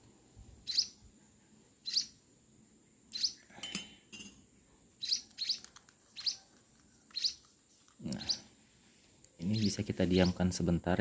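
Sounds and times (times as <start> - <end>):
bird chick chirping: 0.6 - 1.1, 1.8 - 2.2, 3.1 - 3.5, 5.0 - 7.6, 8.2 - 8.5
spoon clinking in a dish: 3.6 - 4.4.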